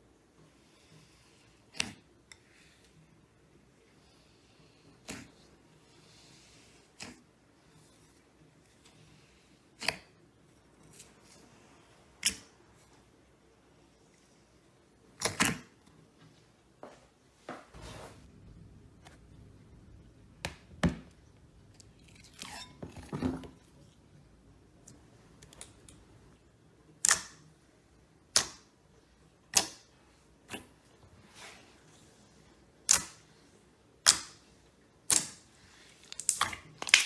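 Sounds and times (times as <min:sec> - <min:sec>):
slime squishing: 0:35.0 - 0:37.0.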